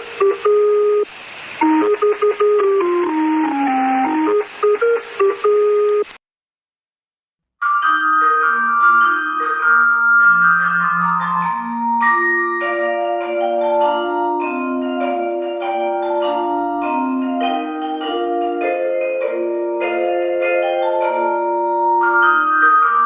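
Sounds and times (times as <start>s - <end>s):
melody of short pitched notes: 0.0s - 6.1s.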